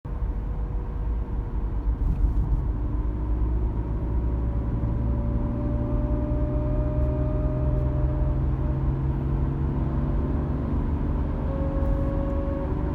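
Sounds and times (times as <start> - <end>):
road and drivetrain rumble: 0.1 - 12.9.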